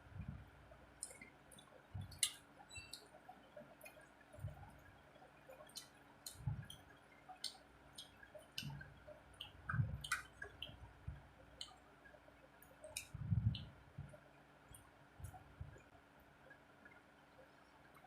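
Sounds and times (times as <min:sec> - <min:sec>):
soft low thumps: 0:00.0 - 0:00.5, 0:02.0 - 0:02.2, 0:06.3 - 0:06.7, 0:09.6 - 0:11.3, 0:13.0 - 0:14.2, 0:15.2 - 0:15.9
wet chewing and mouth smacks: 0:05.6 - 0:10.8.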